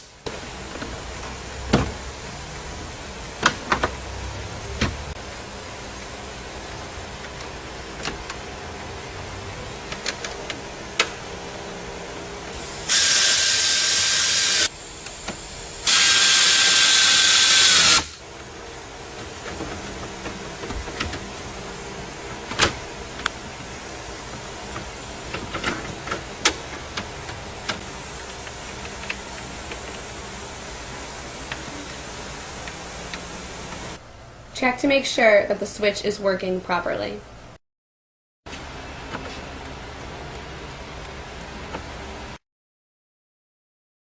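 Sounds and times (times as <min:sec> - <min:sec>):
power screwdriver whirring: 0:15.9 - 0:18.2.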